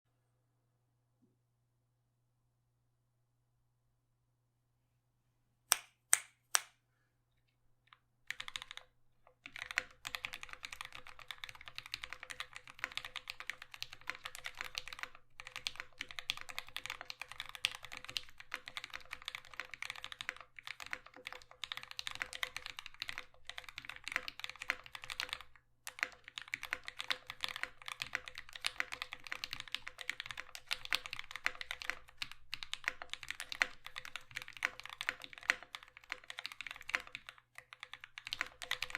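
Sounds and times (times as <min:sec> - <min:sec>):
mechanical keyboard typing: 0:08.3 - 0:38.9.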